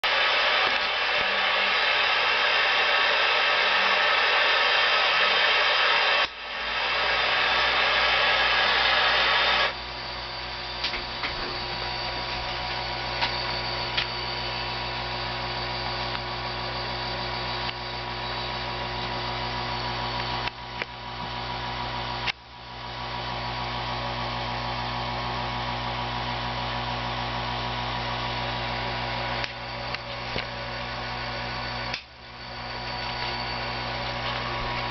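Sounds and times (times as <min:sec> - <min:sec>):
loud steady hiss: 0:00.0 - 0:18.8
electrical hum: 0:00.0 - 0:34.9.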